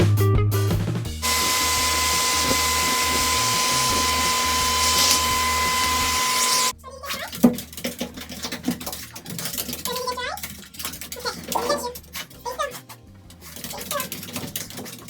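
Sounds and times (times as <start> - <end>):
hair dryer running: 1.2 - 6.7.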